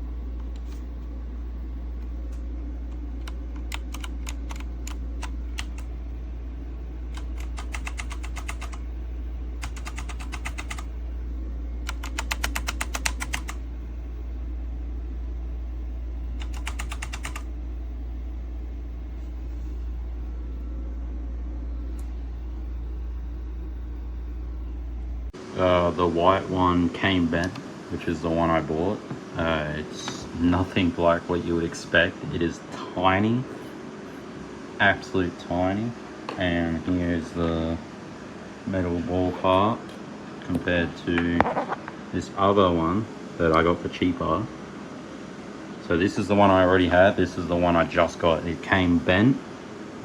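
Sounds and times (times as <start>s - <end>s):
steady low hum: 0.0s - 50.0s
mechanical keyboard key clicks: 3.2s - 5.8s, 7.2s - 8.8s, 9.6s - 10.8s, 11.9s - 13.6s, 16.4s - 17.4s.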